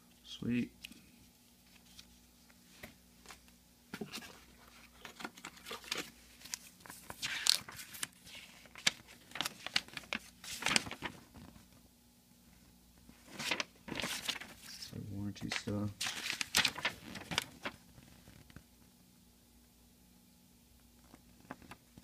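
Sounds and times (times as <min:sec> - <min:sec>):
packaging crinkling and tearing: 0:05.0 - 0:11.5, 0:13.3 - 0:14.7, 0:15.4 - 0:18.5.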